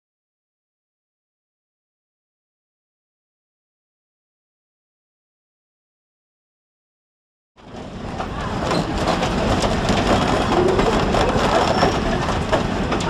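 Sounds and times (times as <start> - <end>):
train rumble: 7.6 - 13.0
wheels clattering on rails: 7.6 - 13.0.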